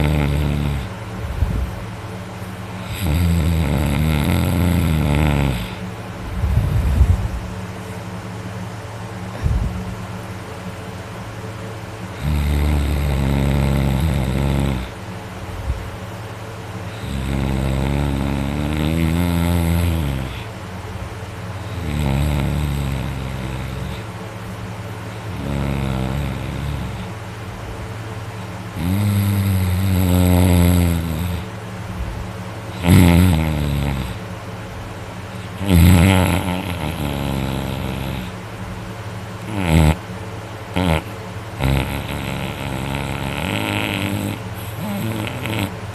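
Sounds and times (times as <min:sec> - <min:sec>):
person snoring loudly: 0:00.0 - 0:01.0, 0:02.7 - 0:05.9, 0:12.1 - 0:15.0, 0:16.9 - 0:20.5, 0:21.6 - 0:24.1, 0:25.1 - 0:27.1, 0:28.7 - 0:31.5, 0:32.7 - 0:34.2, 0:35.4 - 0:38.4, 0:39.4 - 0:40.1, 0:40.7 - 0:45.9
sharp snorts: 0:00.0 - 0:01.7, 0:02.8 - 0:07.0, 0:12.1 - 0:15.0, 0:16.9 - 0:20.5, 0:21.6 - 0:24.1, 0:25.1 - 0:27.2, 0:28.7 - 0:31.5, 0:32.7 - 0:34.2, 0:35.4 - 0:38.4, 0:39.4 - 0:40.1, 0:40.7 - 0:45.9.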